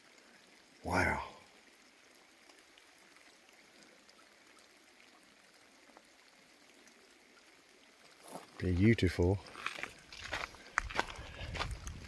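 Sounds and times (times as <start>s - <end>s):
creek water running: 0.0s - 12.0s.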